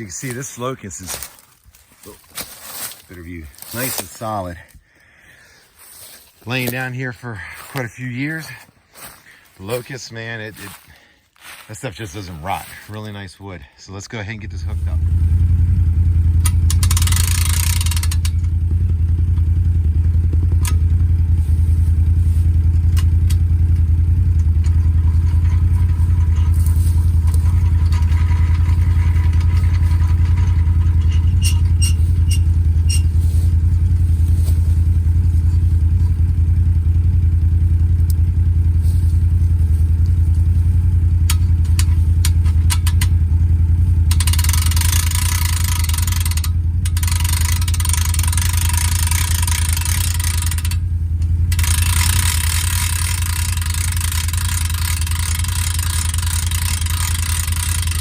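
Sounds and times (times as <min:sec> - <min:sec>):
atv engine idling: 0:00.0 - 0:58.0.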